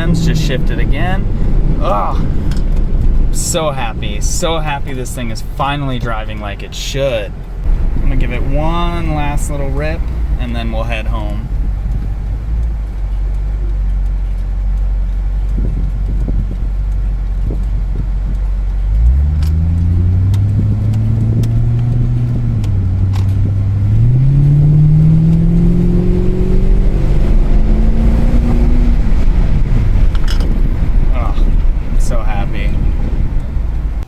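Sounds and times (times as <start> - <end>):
car engine accelerating: 0.0 - 34.0.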